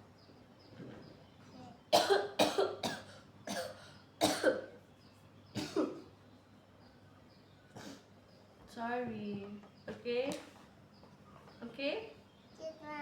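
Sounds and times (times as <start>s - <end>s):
woman coughing: 1.9s - 4.7s, 5.6s - 6.0s.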